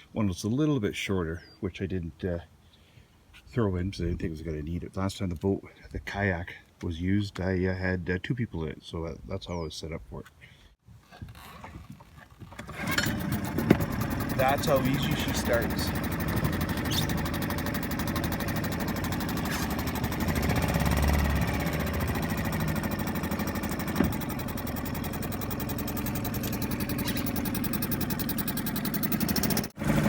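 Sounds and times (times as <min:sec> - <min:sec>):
outboard motor running: 0:11.3 - 0:30.0.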